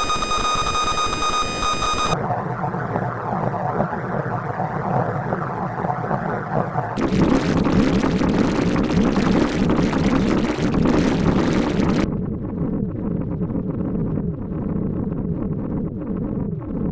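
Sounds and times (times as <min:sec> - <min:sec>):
electronic buzzing hum: 0:00.0 - 0:02.2, 0:07.0 - 0:12.1
hissing static: 0:00.0 - 0:02.2, 0:07.0 - 0:12.0.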